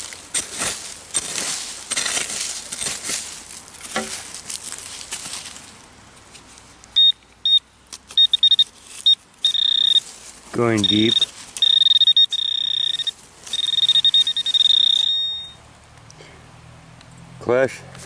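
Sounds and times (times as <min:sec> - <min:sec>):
rustling in dry leaves: 0:00.0 - 0:15.6
metal detector beeps: 0:07.0 - 0:10.0, 0:10.6 - 0:15.6.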